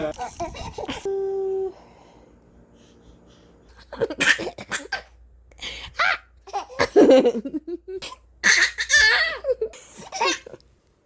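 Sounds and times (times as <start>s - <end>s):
baby laughing: 6.0s - 10.6s.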